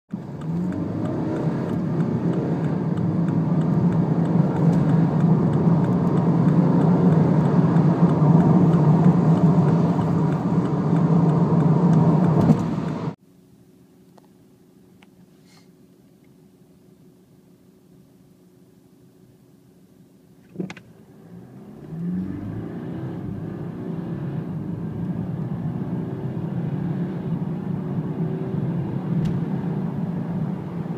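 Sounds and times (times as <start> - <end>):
diesel engine accelerating: 0.1 - 13.2, 21.0 - 30.9.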